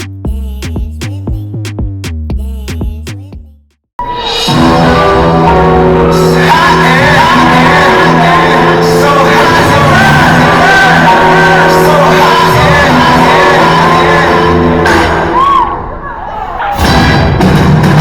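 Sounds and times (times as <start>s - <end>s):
hip-hop dance music: 0.0s - 15.8s
crowd shouting and whooping: 9.4s - 17.0s.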